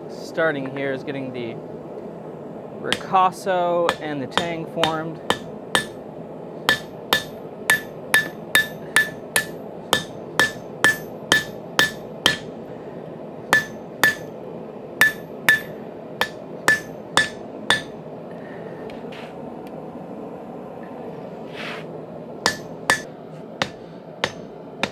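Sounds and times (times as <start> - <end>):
hammer striking steel on anvil: 2.9 - 3.2, 3.9 - 6.0, 6.7 - 12.6, 13.5 - 14.4, 15.0 - 18.0, 22.5 - 24.9.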